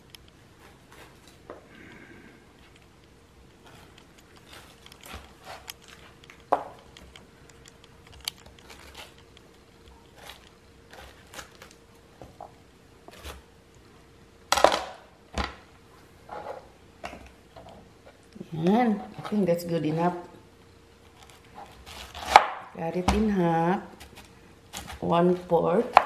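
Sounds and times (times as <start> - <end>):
knife crunching through rind: 10.0 - 11.8, 21.0 - 22.7.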